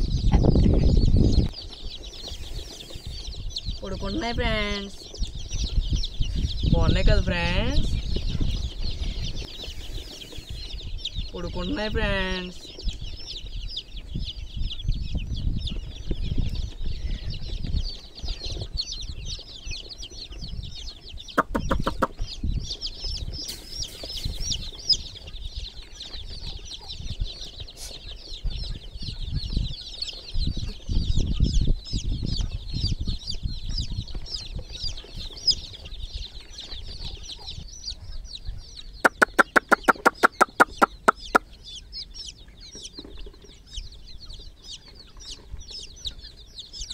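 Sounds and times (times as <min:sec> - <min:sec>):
baby chicks peeping: 0:00.0 - 0:46.9
sharp clicking pulses: 0:21.4 - 0:22.2, 0:39.0 - 0:41.5.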